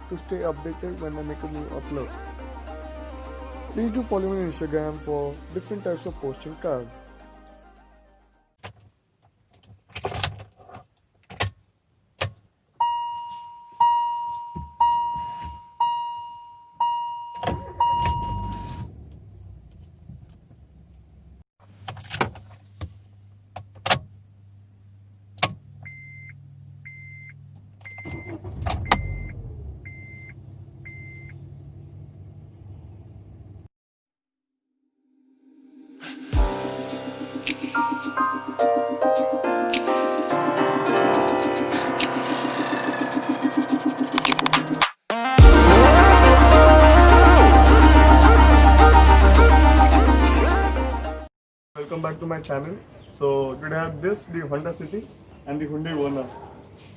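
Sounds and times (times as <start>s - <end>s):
short beeping reminder chime: 12.8s - 18.7s
car warning chime: 12.8s - 18.9s, 25.9s - 31.4s
car door and lock clunks: 16.8s - 20.3s.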